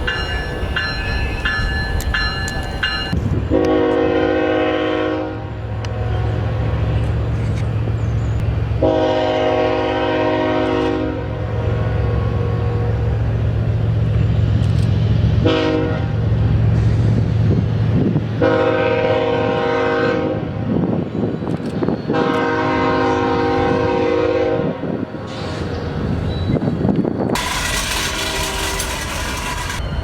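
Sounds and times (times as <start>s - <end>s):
low train drone: 0.0s - 30.0s
train horn blasts: 3.5s - 6.8s, 8.8s - 13.2s, 15.4s - 16.2s, 18.4s - 20.6s, 22.1s - 25.1s, 27.4s - 29.8s.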